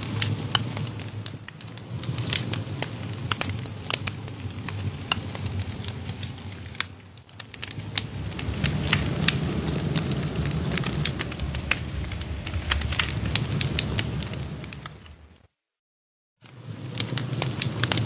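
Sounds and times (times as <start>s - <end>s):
low rush of flame: 0.1s - 15.4s, 16.4s - 18.0s.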